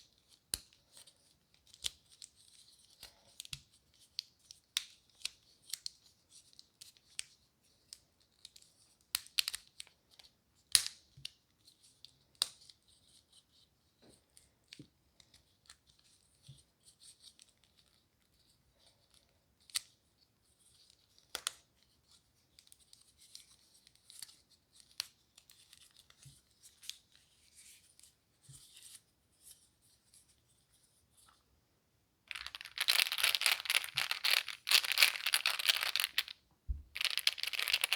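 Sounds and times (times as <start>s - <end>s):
crackling crinkle: 32.3s - 37.9s
soft rustling: 32.3s - 37.9s.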